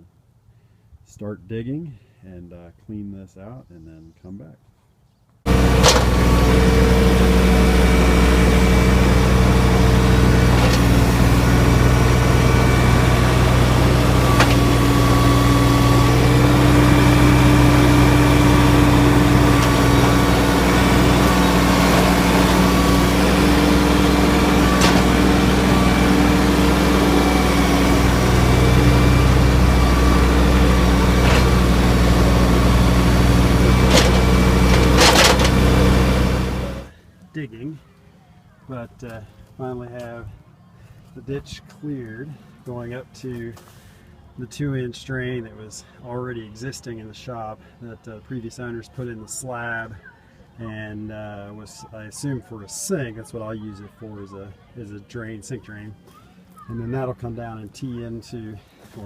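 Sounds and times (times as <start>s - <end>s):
sharp clanks: 5.5s - 6.9s, 10.0s - 29.1s, 30.2s - 36.9s
digging machine engine running: 5.5s - 36.9s.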